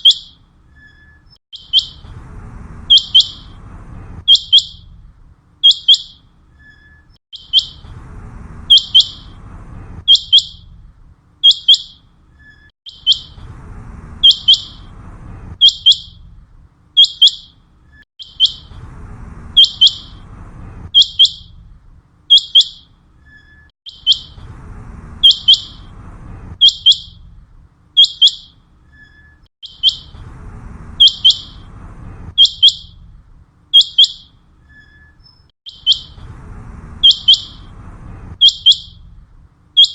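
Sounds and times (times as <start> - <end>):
faint low background rumble: 0.3 - 39.8
quail calling: 25.2 - 25.9, 29.6 - 30.1, 31.0 - 31.6, 35.7 - 36.2, 37.0 - 37.7.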